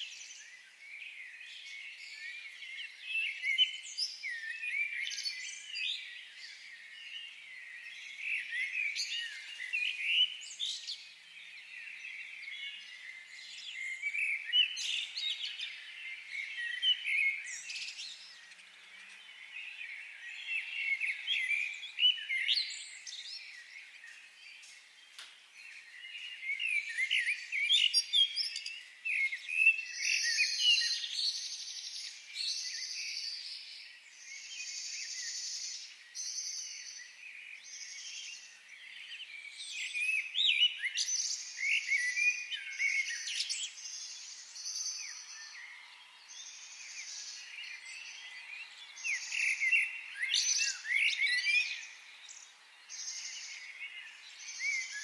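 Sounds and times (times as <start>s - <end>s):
songbirds chirping and singing: 0.0s - 55.0s.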